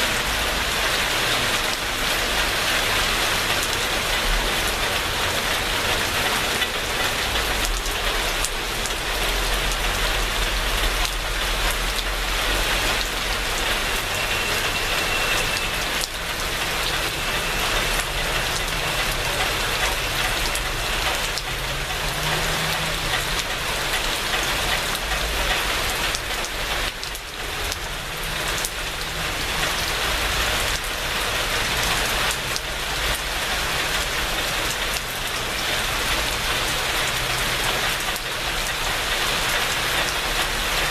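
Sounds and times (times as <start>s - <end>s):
rain falling: 0.0s - 40.9s
raindrops ticking: 0.1s - 40.9s.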